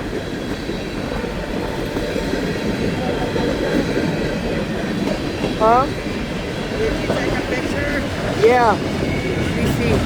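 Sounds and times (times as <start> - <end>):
freight train wheels on rails: 0.0 - 10.0.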